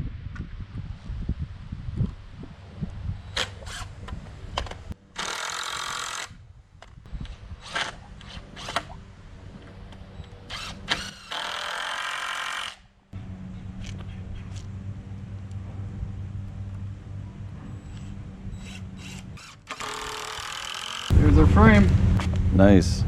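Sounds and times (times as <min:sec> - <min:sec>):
power tool bursts: 0:05.2 - 0:06.3, 0:10.5 - 0:12.8, 0:18.6 - 0:21.1.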